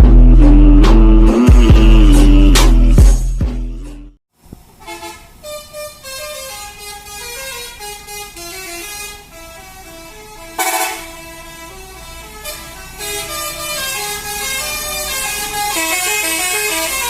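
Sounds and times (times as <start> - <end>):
musical bus horn melody: 4.7 - 17.0
harsh horn blast: 4.8 - 17.0.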